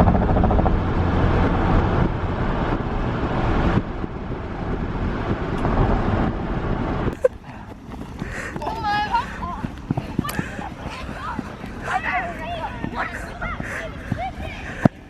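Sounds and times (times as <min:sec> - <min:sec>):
car road and engine noise: 0:00.0 - 0:15.0.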